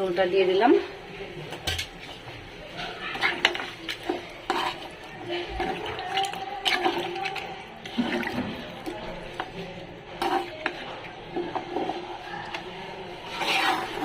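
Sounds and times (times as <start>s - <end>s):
spoon stirring in pot: 1.2s - 14.0s
spoon knocking and scraping pot: 2.8s - 9.6s, 10.2s - 12.7s, 13.3s - 14.0s.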